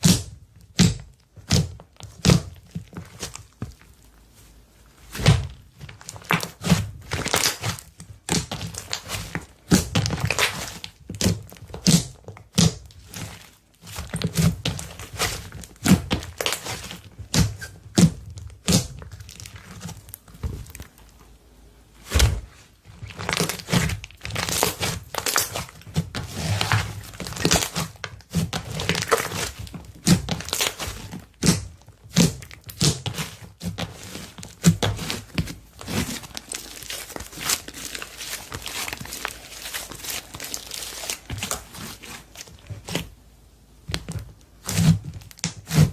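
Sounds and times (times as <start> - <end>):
slime crackling and popping: 5.1 - 21.2, 22.1 - 43.1, 43.9 - 45.9.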